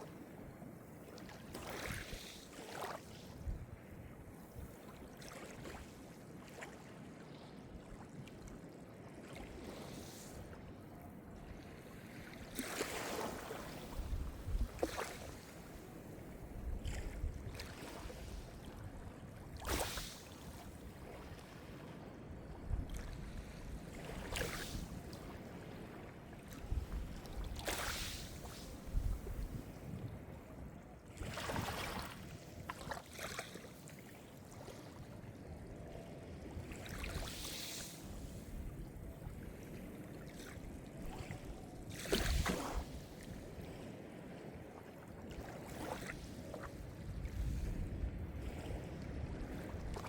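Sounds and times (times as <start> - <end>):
small waves breaking on shore: 0.0 - 50.0
wave splash: 19.6 - 21.0, 26.8 - 29.8, 41.9 - 44.4.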